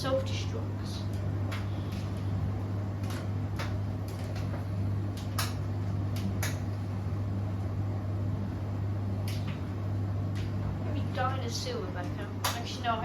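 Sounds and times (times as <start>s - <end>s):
washing machine motor hum: 0.0s - 13.0s.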